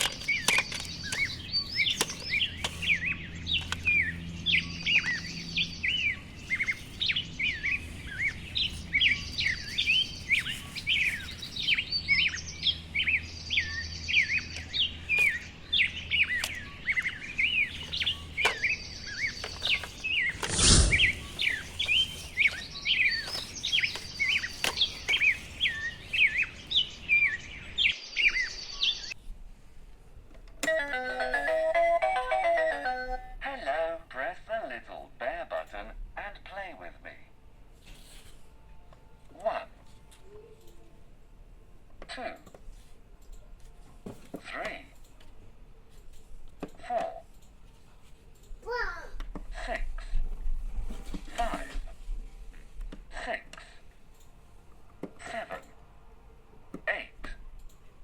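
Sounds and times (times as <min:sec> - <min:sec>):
birds chirping: 0:00.0 - 0:29.2.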